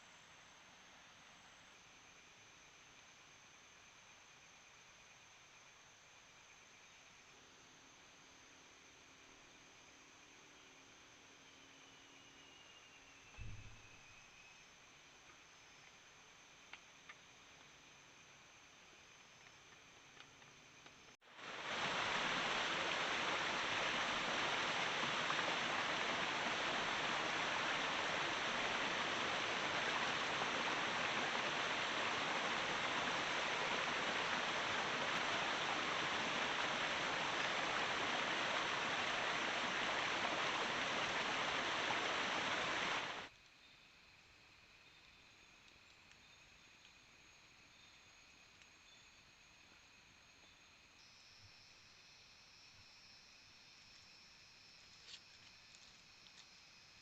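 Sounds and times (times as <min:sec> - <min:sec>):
rushing water hiss: 0:21.2 - 0:43.3.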